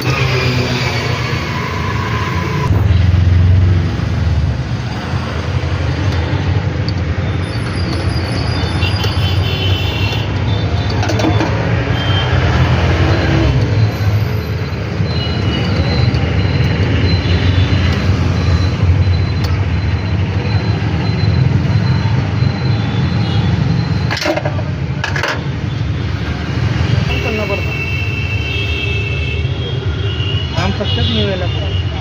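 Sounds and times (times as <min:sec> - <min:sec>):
auto rickshaw engine running: 0:00.0 - 0:08.9.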